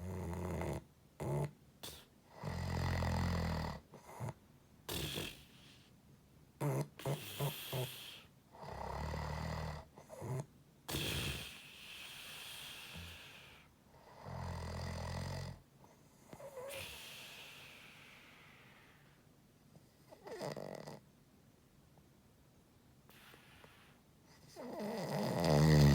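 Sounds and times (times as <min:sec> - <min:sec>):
person snoring: 0:04.9 - 0:05.8, 0:24.5 - 0:25.9
breathy exhale: 0:16.7 - 0:19.2.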